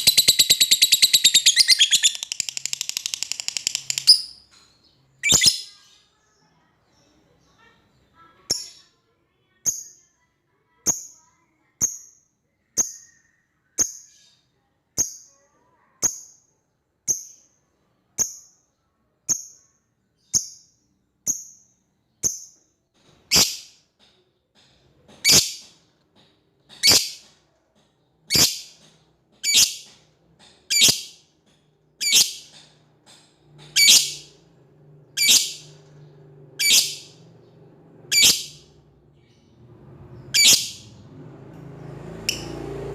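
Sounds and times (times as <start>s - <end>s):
lovebird shrill calls: 0.0s - 4.4s, 40.4s - 40.8s.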